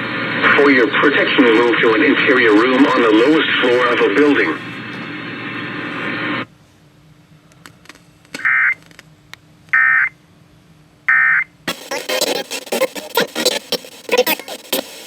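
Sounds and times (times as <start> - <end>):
crackly noisy recording: 0.0 - 15.0
shrill digital data bursts: 11.7 - 15.0.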